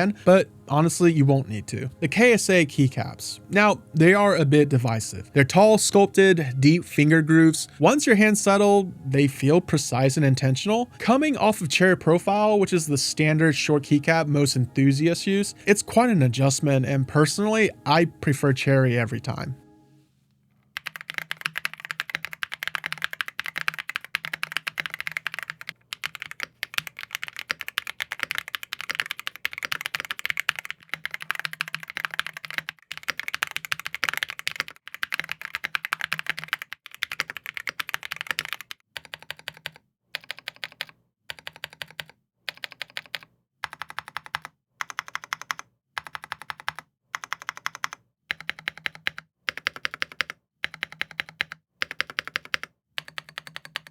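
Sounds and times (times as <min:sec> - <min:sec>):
typing on mechanical keyboard: 0:20.8 - 0:53.9.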